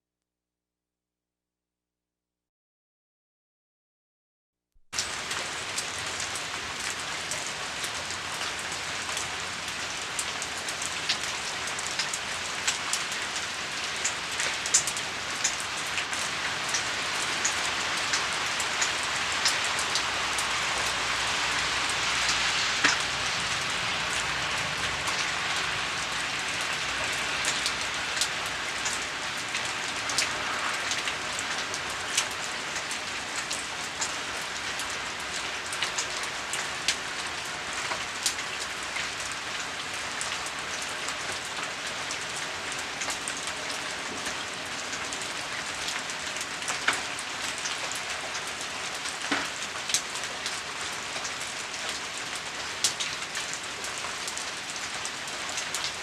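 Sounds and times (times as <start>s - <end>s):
food sizzling in hot oil: 16.3s - 29.4s.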